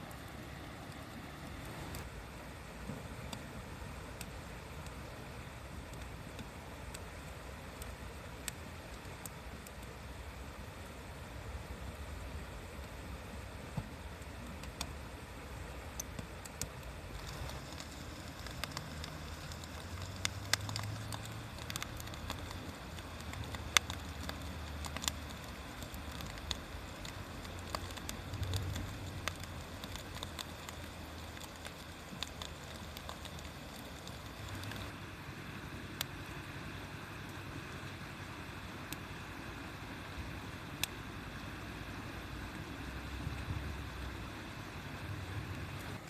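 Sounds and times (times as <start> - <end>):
bonfire crackling: 0.0 - 46.0
soft hiss: 0.0 - 46.0
sharp pops of fire: 16.0 - 34.9.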